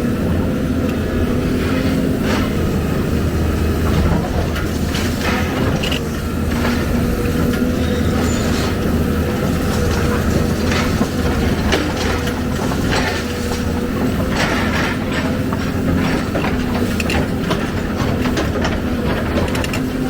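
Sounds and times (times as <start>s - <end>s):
heavy diesel engine running: 0.0s - 20.0s
metallic clanks and rattles: 3.9s - 19.9s.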